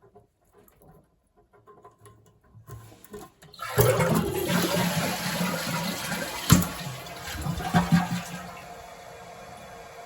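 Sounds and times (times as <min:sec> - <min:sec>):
toilet flushing: 0:03.5 - 0:10.0.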